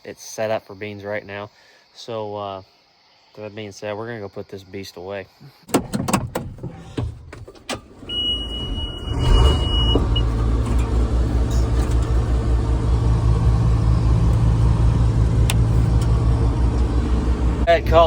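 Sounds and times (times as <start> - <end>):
diesel engine starting and running: 5.8 - 18.0.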